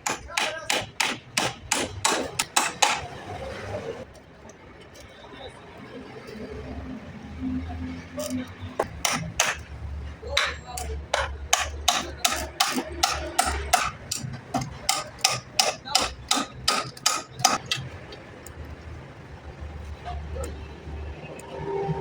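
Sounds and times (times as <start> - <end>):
hammer striking wood: 0.0 - 3.1, 8.8 - 9.7, 10.4 - 17.8.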